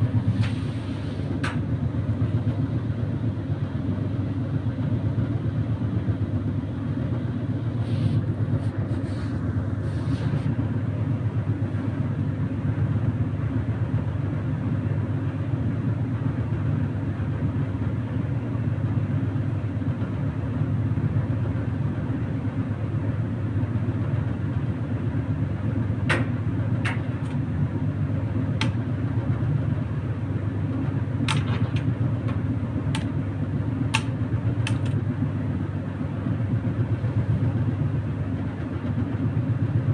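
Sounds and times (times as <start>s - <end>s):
tumble dryer humming: 10.5s - 39.9s.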